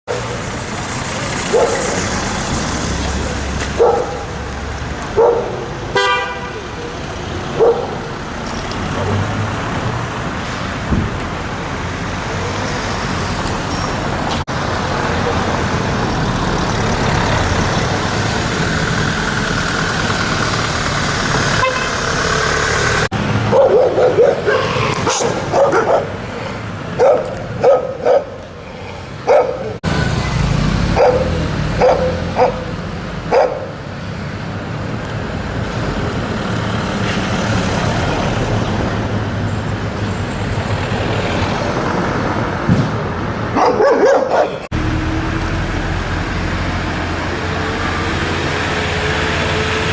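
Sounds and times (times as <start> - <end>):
road traffic noise: 0.0 - 49.9
dogs barking: 1.4 - 2.1, 3.6 - 4.4, 5.1 - 5.8, 7.5 - 8.1, 23.4 - 28.4, 29.2 - 29.8, 30.9 - 33.8, 43.5 - 44.7.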